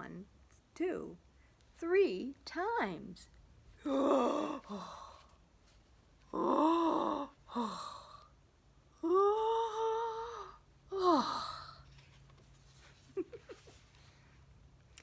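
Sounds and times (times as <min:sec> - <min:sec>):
woman yawning: 0:09.0 - 0:11.7.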